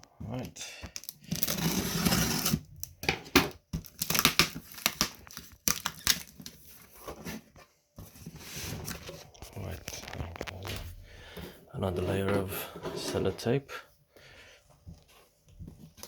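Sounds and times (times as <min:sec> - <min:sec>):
tape peeling and ripping: 0:03.8 - 0:06.5.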